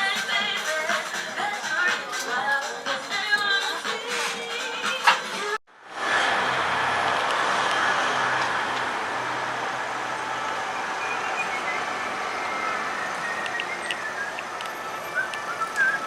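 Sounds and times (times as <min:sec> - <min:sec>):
passing vehicles: 0:05.7 - 0:16.0.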